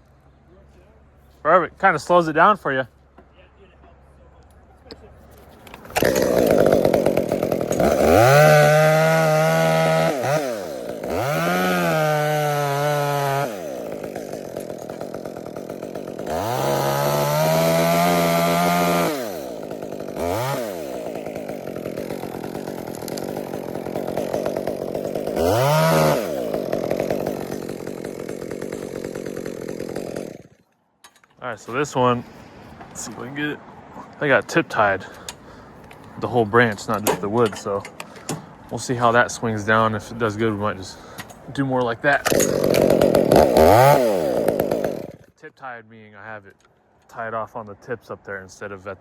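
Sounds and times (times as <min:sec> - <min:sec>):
chainsaw revving: 0:05.8 - 0:30.7, 0:36.7 - 0:45.4.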